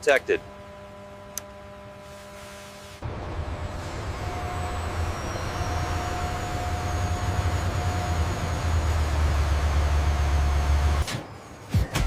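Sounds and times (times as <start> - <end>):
low machine hum: 0.0 - 11.1
faint whine: 0.0 - 11.7
helicopter engine rumble: 3.0 - 11.0.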